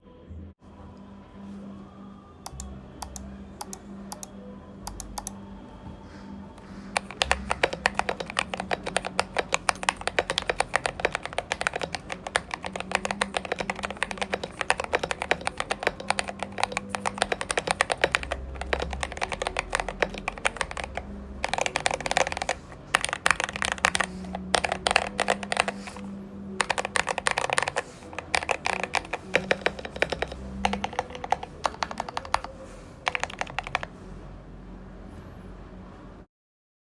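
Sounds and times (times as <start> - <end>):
typing on mechanical keyboard: 2.5 - 5.4, 6.6 - 34.0.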